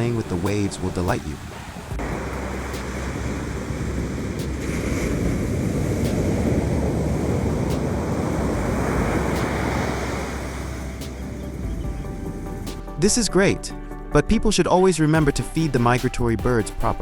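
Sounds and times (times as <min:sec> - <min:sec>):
surf washing up on beach: 0:00.0 - 0:12.8
wind rumbling on microphone: 0:00.0 - 0:12.8.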